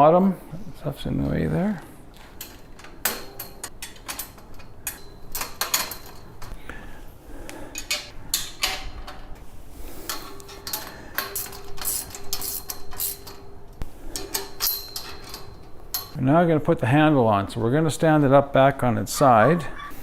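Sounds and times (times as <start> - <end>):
wrench tightening bolts: 10.4 - 13.4
metallic clicks and clinks: 14.2 - 16.2.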